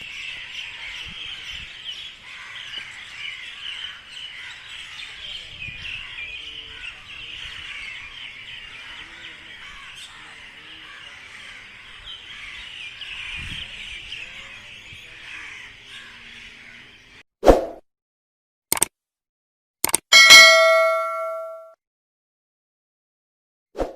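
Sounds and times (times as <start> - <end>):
small birds chirping: 0.0 - 17.2
loud metal clang: 20.2 - 21.6.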